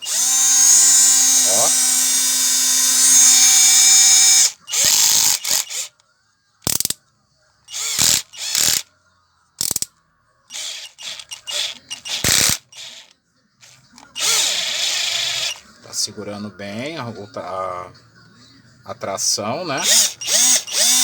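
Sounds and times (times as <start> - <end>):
cordless drill running in bursts: 0.0 - 5.9, 7.7 - 8.8, 10.5 - 15.6, 19.8 - 21.0
ratcheting clatter: 0.0 - 5.9, 6.7 - 7.0, 7.7 - 8.8, 9.6 - 9.9, 10.5 - 15.6, 19.8 - 21.0.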